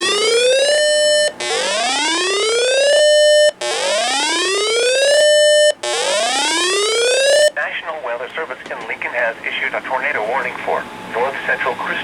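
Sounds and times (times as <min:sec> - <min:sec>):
electronic alarm whoop: 0:00.0 - 0:07.5.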